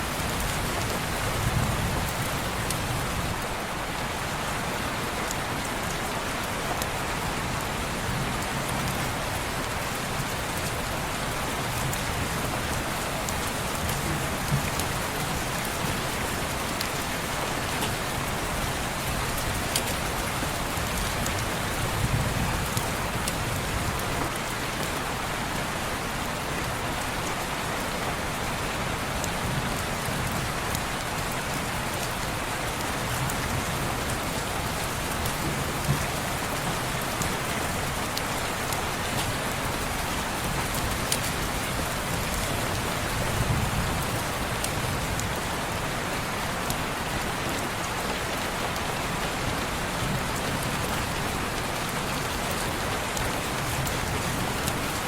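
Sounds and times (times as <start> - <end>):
rain on window: 8.4 - 24.3, 29.2 - 55.0.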